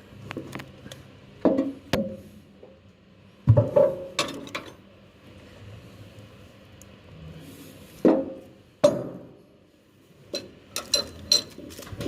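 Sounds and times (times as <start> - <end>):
solid knocks on metal: 8.1 - 9.3.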